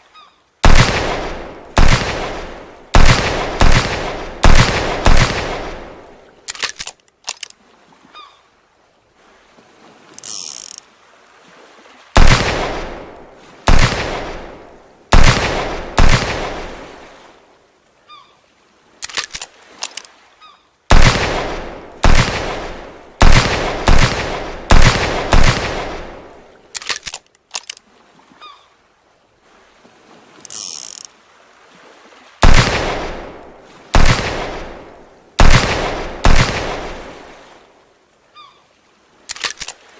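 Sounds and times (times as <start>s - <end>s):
gunshots with echoing tail: 0.6s - 6.1s, 12.2s - 16.8s, 20.9s - 26.4s, 32.4s - 37.2s
small mechanical clicks: 10.2s - 10.8s, 19.0s - 20.1s, 26.8s - 27.8s, 30.5s - 31.1s, 39.3s - 39.8s.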